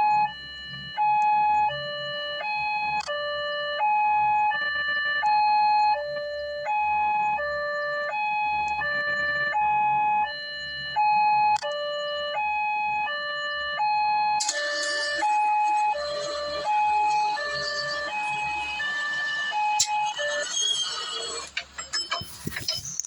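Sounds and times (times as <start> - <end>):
electronic two-tone siren: 0.0 - 23.0.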